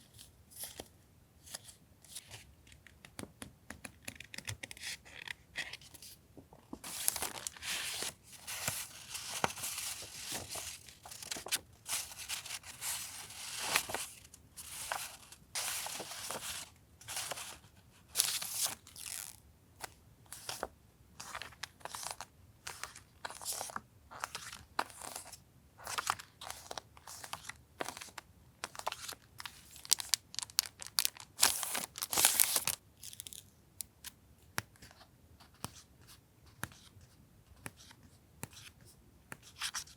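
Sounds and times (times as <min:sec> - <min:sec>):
paper rustling and crinkling: 0:06.7 - 0:19.4, 0:21.3 - 0:33.4.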